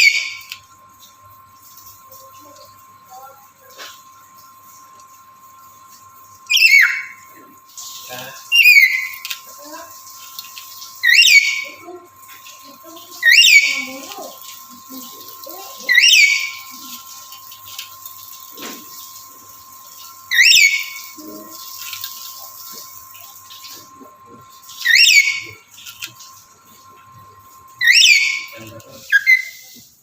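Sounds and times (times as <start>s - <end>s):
parrot calling: 0.0s - 0.6s, 6.5s - 9.4s, 11.0s - 11.8s, 13.2s - 14.2s, 15.7s - 17.0s, 20.3s - 21.6s, 23.7s - 26.1s, 27.8s - 29.8s
faint steady hum: 0.0s - 30.0s.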